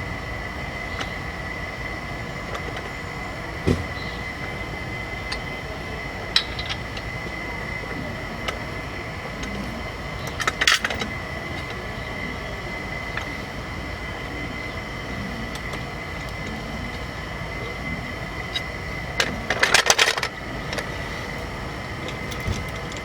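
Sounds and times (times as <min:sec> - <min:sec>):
steady hum with high whine: 0:00.0 - 0:23.0
metal parts clicking and knocking: 0:10.2 - 0:11.8, 0:18.4 - 0:23.0.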